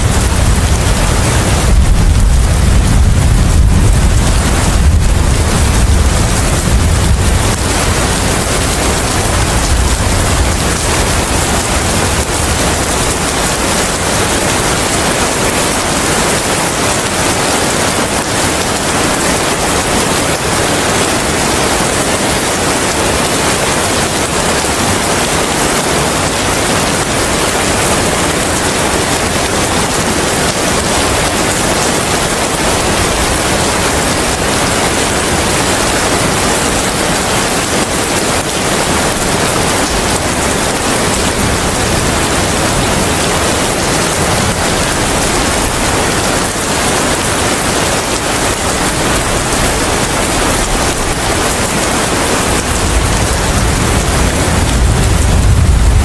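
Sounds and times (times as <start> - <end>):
low rumble: 0.0 - 8.4, 52.7 - 56.0
dense rain hiss: 0.0 - 56.0
wind: 0.0 - 56.0.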